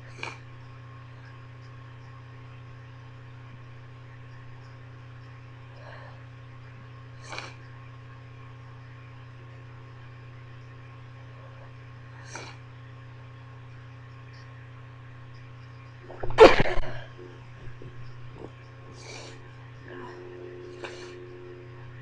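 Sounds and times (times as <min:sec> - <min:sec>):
steady electrical hum: 0:00.0 - 0:22.0
person stifled sneeze: 0:16.1 - 0:17.1.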